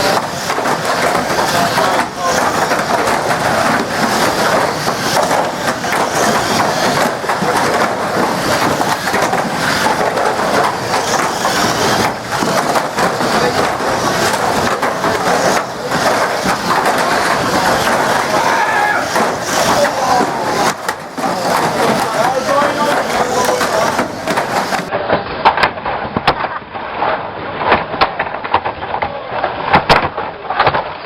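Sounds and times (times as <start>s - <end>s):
knocks: 0.0s - 24.9s
cars crashing and grinding together: 0.0s - 25.6s.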